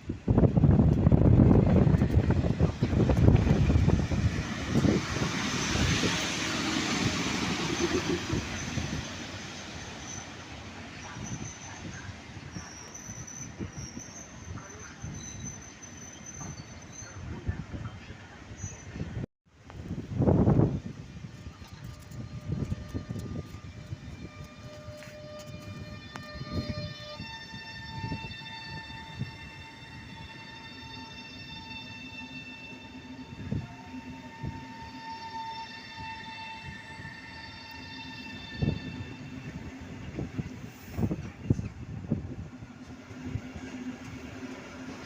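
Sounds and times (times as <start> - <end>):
train rumbling past: 0.0 - 45.0.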